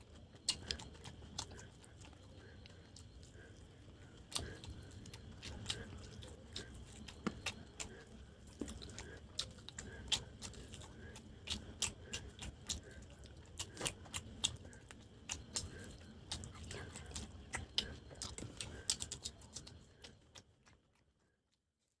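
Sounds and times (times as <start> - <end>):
close chewing with wet mouth clicks: 0.0 - 21.4.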